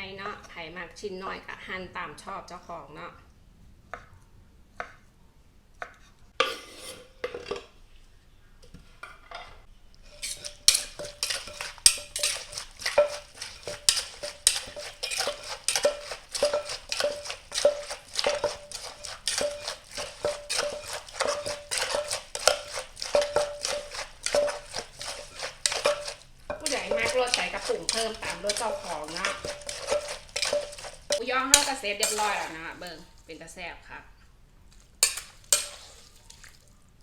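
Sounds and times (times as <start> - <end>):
pestle pounding in a mortar: 10.3 - 32.6.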